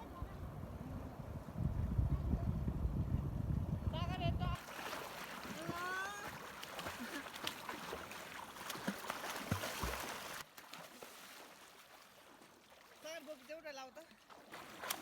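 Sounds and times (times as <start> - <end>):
river water rushing: 4.6 - 10.4
water splashes and knocks: 4.6 - 15.0.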